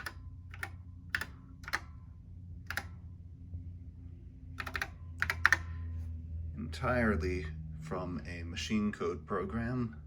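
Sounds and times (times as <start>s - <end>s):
computer keyboard keystrokes: 0.0s - 2.0s, 2.6s - 3.0s, 4.6s - 5.7s
low steady hum: 0.0s - 10.0s.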